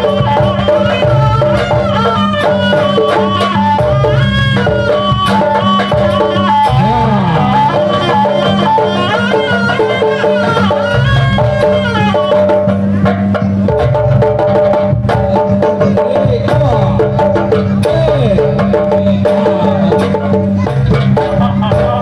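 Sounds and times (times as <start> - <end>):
reedy wind melody: 0.0 - 12.5
drumming: 0.0 - 22.0.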